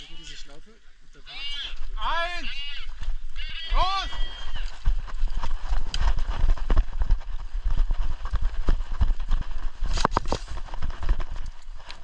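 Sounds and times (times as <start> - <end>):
gear jostling: 2.6 - 12.0
running footsteps thudding: 4.1 - 11.9.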